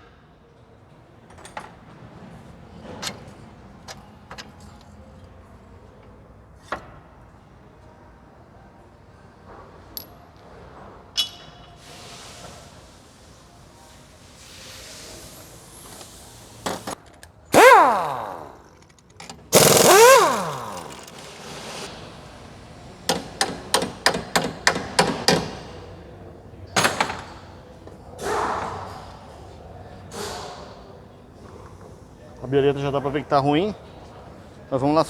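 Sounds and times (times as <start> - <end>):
rapid sharp clicks: 19.6 - 21.8
metal tools clanking: 19.6 - 21.9.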